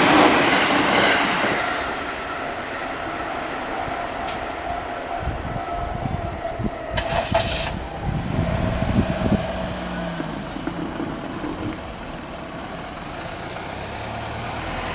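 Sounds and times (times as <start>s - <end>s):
vehicles driving past: 6.6s - 14.9s.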